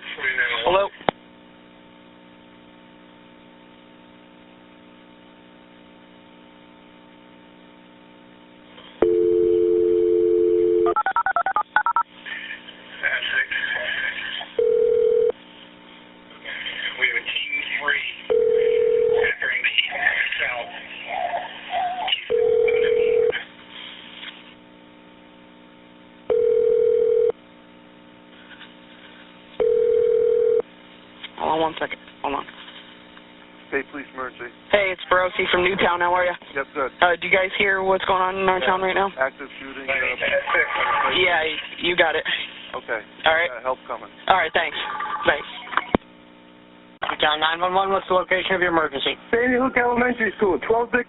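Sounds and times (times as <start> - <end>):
faint telephone line hum: 0.1 - 21.2, 22.0 - 35.3
telephone dial tone: 9.0 - 12.0, 14.6 - 15.3, 26.3 - 27.3, 29.6 - 30.6
touch-tone dialing beeps: 9.0 - 12.0.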